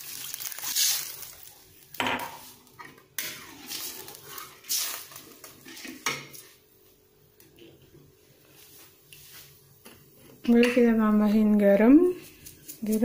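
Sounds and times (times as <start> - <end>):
utensil stirring and scraping pan: 2.2 - 6.6.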